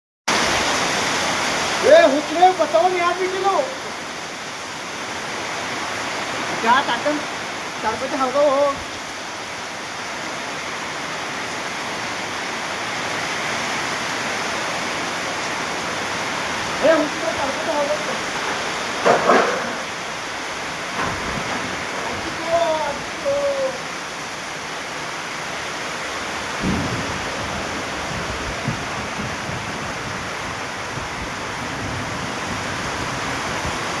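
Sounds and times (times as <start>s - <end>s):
heavy rain pouring: 0.3s - 34.0s
gusty wind rumbling: 14.3s - 24.7s, 25.5s - 34.0s.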